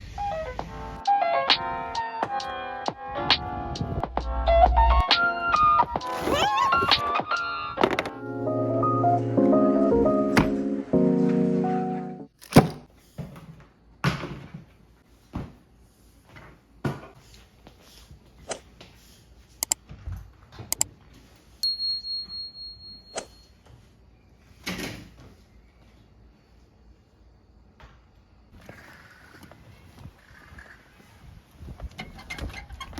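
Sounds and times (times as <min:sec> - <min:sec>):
music: 0:00.0 - 0:12.3.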